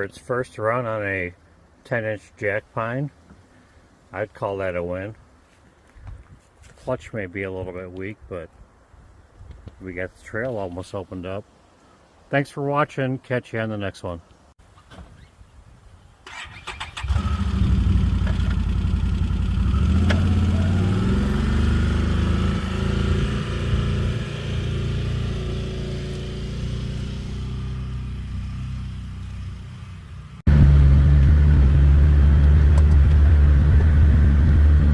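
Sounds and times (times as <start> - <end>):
engine running: 17.0 - 34.9.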